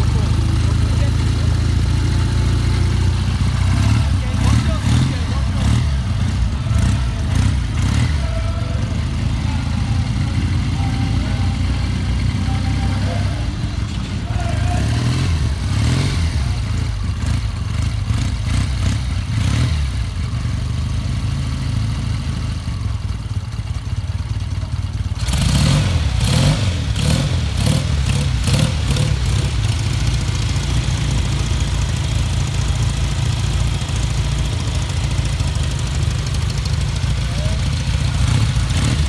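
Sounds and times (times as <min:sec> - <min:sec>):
motorcycle engines idling: 0:00.0 - 0:39.0
motorcycle throttle blips: 0:22.7 - 0:39.0.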